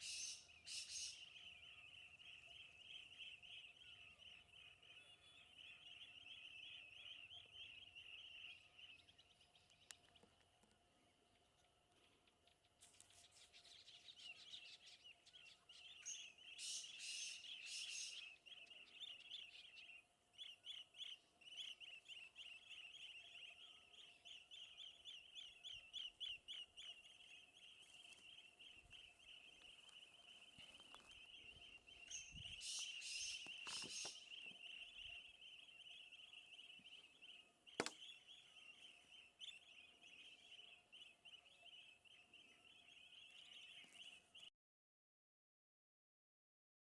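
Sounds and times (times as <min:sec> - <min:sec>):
bird calls: 0:00.0 - 0:44.5.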